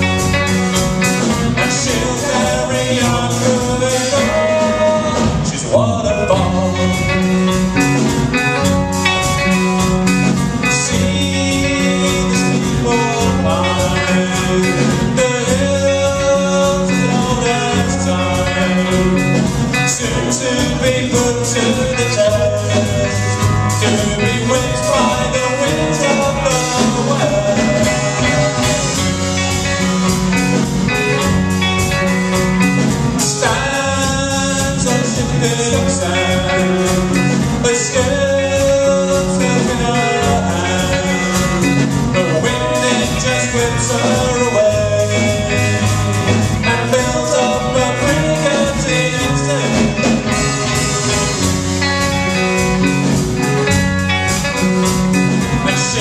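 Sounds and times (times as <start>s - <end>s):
guitar-led band music: 0.0s - 56.0s.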